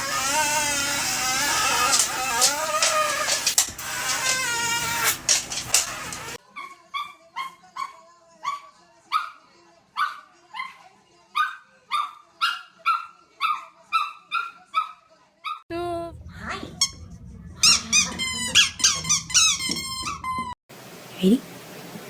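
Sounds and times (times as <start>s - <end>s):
dog barking high: 11.4s - 15.6s.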